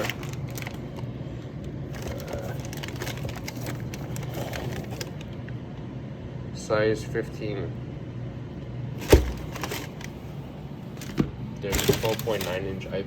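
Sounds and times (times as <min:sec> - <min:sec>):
packaging clicks and crackles: 0:00.0 - 0:01.1, 0:01.9 - 0:05.4, 0:09.0 - 0:10.2, 0:11.0 - 0:12.9
steady low hum: 0:00.0 - 0:13.0.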